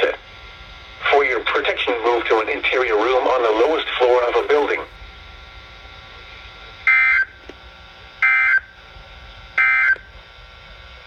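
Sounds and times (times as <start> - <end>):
radio hiss: 0.0 - 10.2
two-tone digital buzzes: 6.8 - 7.4, 8.1 - 8.9, 9.6 - 11.0.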